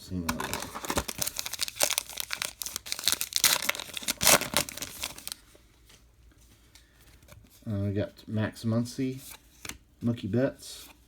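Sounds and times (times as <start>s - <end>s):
wrapper tearing and crinkling: 0.3s - 5.4s.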